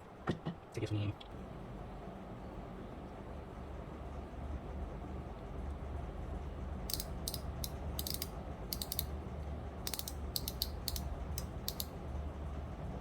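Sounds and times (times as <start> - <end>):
low steady hum: 0.0 - 13.0
fishing reel drag clicking: 6.9 - 9.1, 9.9 - 11.9.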